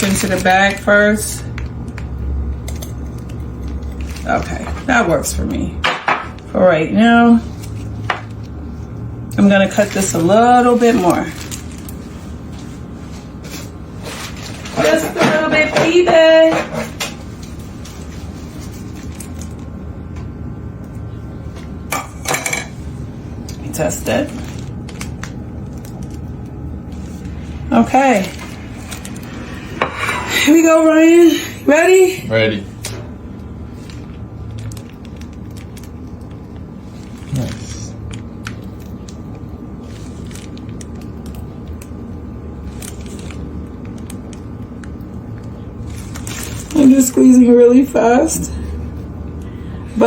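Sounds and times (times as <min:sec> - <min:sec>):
low mechanical hum: 0:00.0 - 0:50.0
piping bag clicks and crackles: 0:32.8 - 0:47.2.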